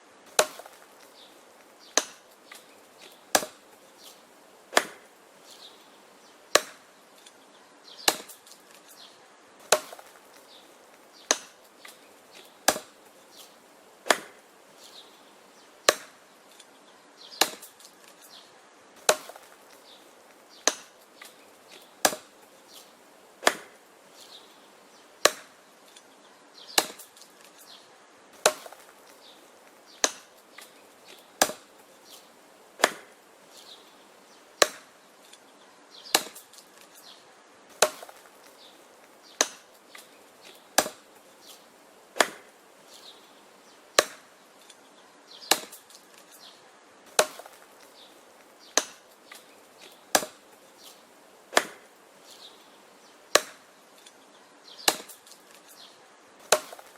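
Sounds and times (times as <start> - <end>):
wood chopping: 0.3 - 5.1, 6.5 - 7.4, 8.0 - 9.0, 9.6 - 15.0, 15.8 - 16.7, 17.3 - 18.3, 19.0 - 24.5, 25.2 - 26.1, 26.7 - 27.7, 28.4 - 33.8, 34.6 - 35.4, 36.1 - 43.2, 44.0 - 44.8, 45.4 - 46.5, 47.1 - 51.9, 53.3 - 54.1, 54.8 - 55.8, 56.4 - 56.9.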